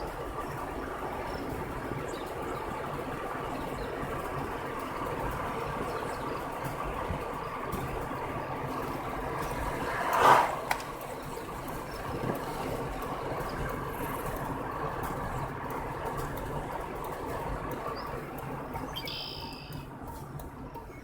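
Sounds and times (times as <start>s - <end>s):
vehicle engine idling: 0.0s - 21.0s
loud whoosh: 9.9s - 10.8s.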